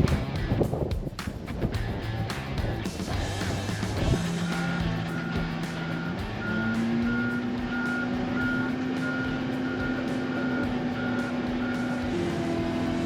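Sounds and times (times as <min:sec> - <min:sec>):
engine running: 0:01.7 - 0:13.0
backup alarm beeping: 0:04.4 - 0:12.0.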